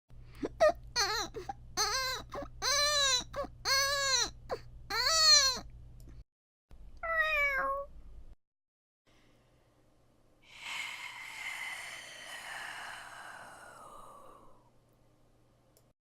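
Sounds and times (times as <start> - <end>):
person imitating baby crying: 0.4 - 5.7.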